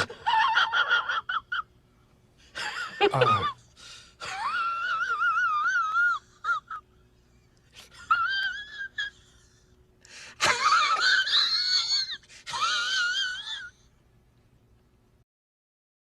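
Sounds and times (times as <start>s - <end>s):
high-pitched wheezing laugh: 0.0s - 1.7s, 2.5s - 7.0s, 7.8s - 13.9s.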